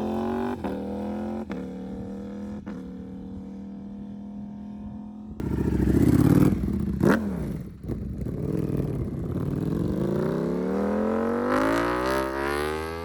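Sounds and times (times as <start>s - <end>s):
motorcycle engine accelerating: 0.0s - 13.0s.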